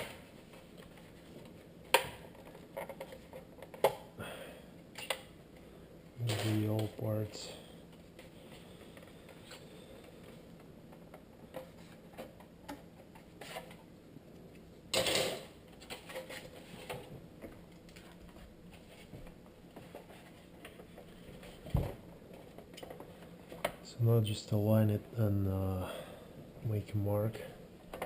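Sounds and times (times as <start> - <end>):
parts clattering: 6.2 - 13.9, 14.9 - 23.9.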